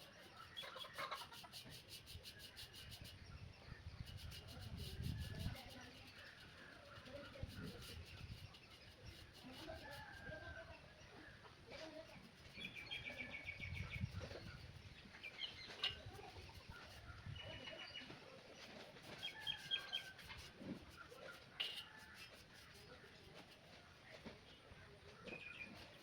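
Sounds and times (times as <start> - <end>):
faint high rapid bird chirps: 11.7 - 18.4.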